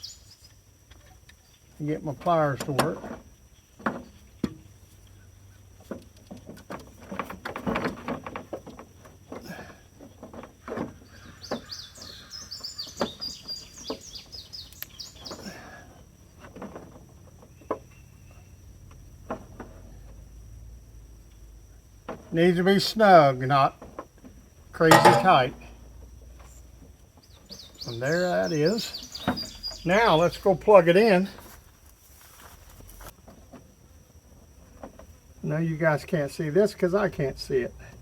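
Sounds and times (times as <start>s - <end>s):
bird chirping: 0.0s - 0.6s, 11.0s - 15.4s, 27.2s - 30.6s.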